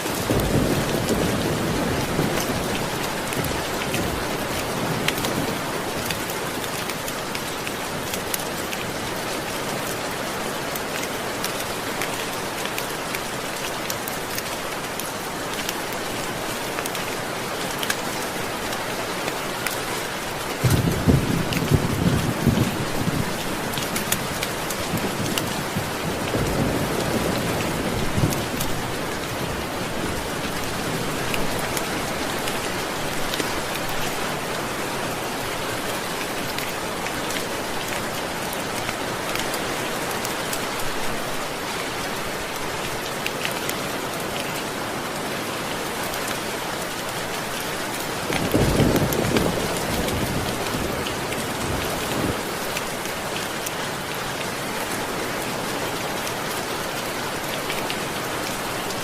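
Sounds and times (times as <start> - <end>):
steady rain falling: 0.0 - 59.0
low rolls of thunder: 20.6 - 23.4.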